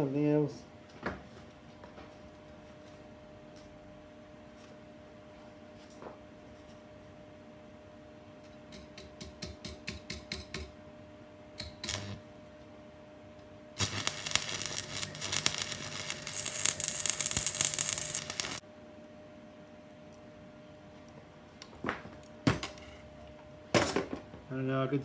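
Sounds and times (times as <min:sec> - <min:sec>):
welding arc crackling: 0:11.9 - 0:12.2, 0:13.8 - 0:18.6
rapid clicks: 0:13.8 - 0:18.6.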